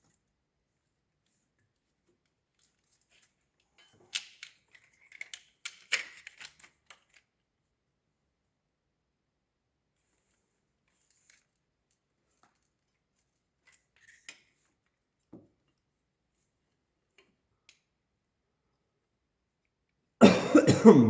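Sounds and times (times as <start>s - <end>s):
small metal parts clicking: 3.8s - 7.2s
loud cough: 20.2s - 21.0s.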